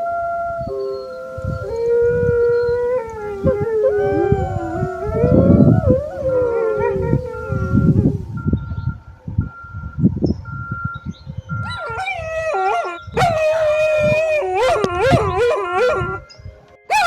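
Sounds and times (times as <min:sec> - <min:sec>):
canines howling: 0:00.0 - 0:08.3, 0:11.8 - 0:16.2
low rumbling noise: 0:00.0 - 0:10.8
truck reverse beeper: 0:04.1 - 0:12.2.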